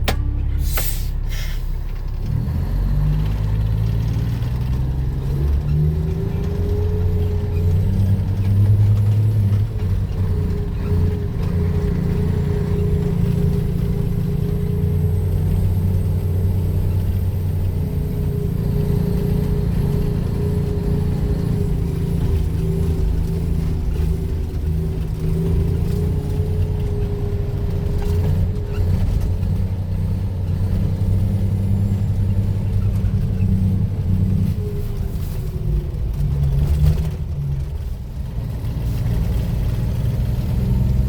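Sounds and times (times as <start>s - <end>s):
steady higher whine: 0.0s - 2.0s
excavator diesel engine drone: 0.0s - 41.0s.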